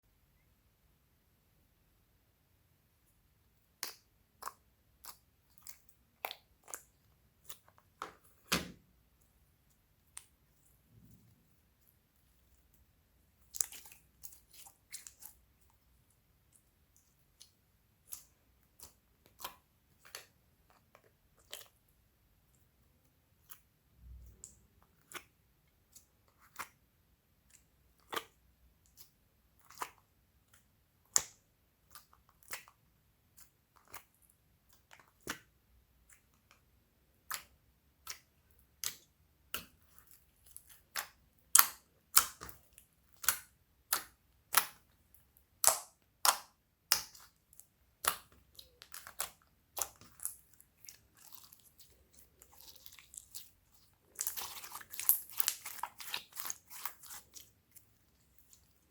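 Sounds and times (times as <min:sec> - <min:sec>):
slime clicking and popping: 0:40.5 - 0:44.9, 0:45.6 - 0:51.6, 0:54.2 - 0:57.5.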